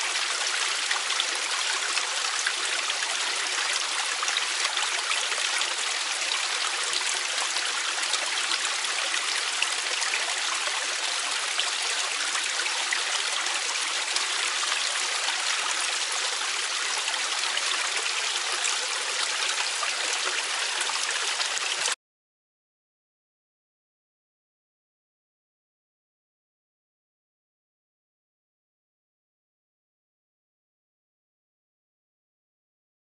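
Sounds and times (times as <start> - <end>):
stream flowing over rocks: 0.0 - 22.0.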